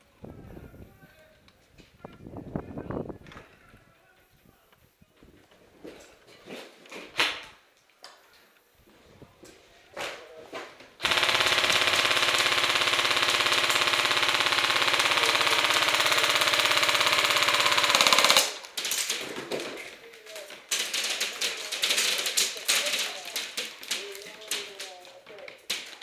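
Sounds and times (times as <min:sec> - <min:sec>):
airsoft gun full-auto burst: 0:11.0 - 0:19.2.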